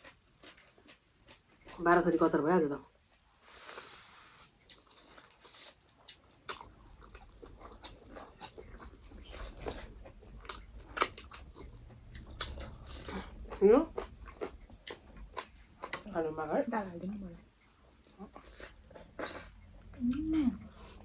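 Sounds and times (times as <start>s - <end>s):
person chewing food: 0.0s - 2.0s, 2.9s - 16.2s, 17.1s - 21.0s.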